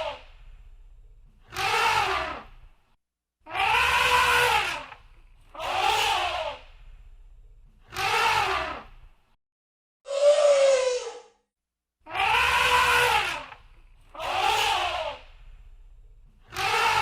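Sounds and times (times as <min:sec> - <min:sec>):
elephant trumpeting: 0:03.5 - 0:04.9, 0:12.1 - 0:13.5.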